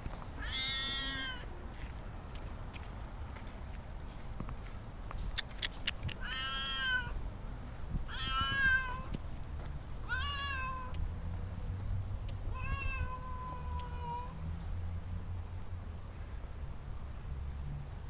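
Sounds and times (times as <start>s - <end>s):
cat meowing: 0.4s - 1.5s, 6.2s - 7.2s, 8.1s - 9.1s, 10.0s - 11.0s, 12.5s - 14.3s.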